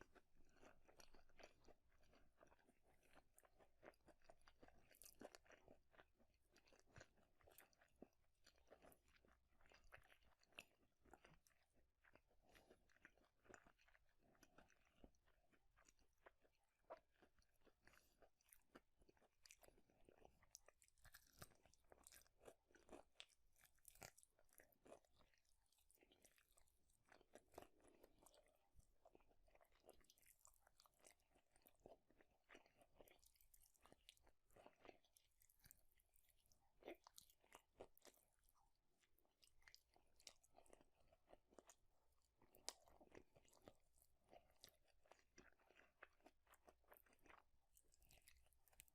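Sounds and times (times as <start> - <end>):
chewing and biting food: 0.0 - 48.9.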